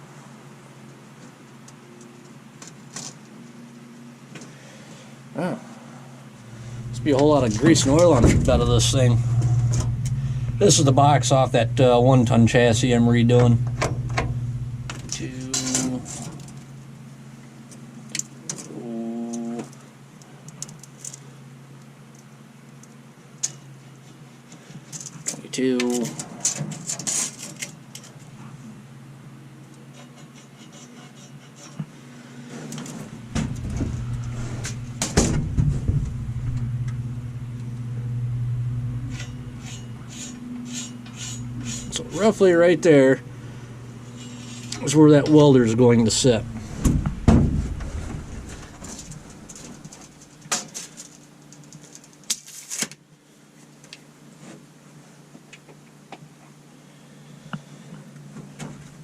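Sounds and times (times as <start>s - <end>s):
low motor hum: 5.0s - 24.7s, 27.8s - 30.0s, 32.0s - 51.7s
sharp clicks and knocks: 13.3s - 16.7s
sharp knocks: 46.6s - 49.1s.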